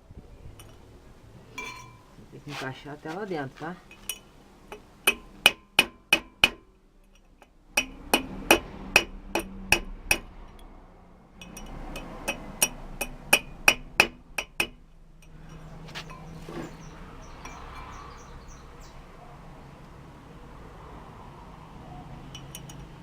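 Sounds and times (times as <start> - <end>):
hammer tapping on metal: 3.9 - 7.2, 7.8 - 10.4, 11.4 - 16.8.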